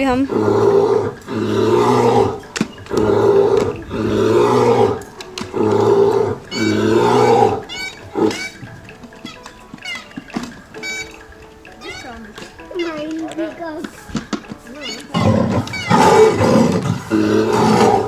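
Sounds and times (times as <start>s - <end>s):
high chirping calls: 0.0s - 18.0s
recorded animal roars from loudspeaker: 0.2s - 8.7s, 15.1s - 18.0s.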